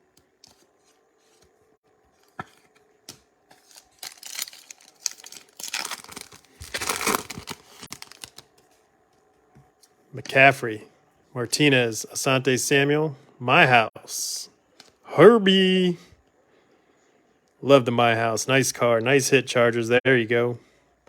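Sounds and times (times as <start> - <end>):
foil pack crinkling and tearing: 3.1 - 8.6.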